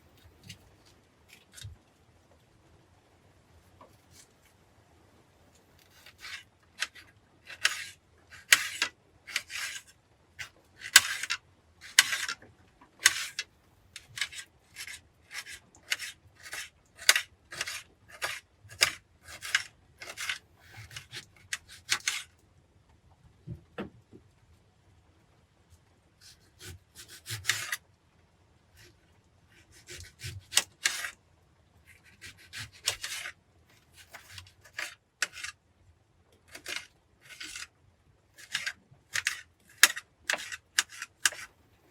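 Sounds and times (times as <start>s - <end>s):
rasping scraping strokes: 14.0s - 22.2s, 31.9s - 35.6s, 36.5s - 37.7s.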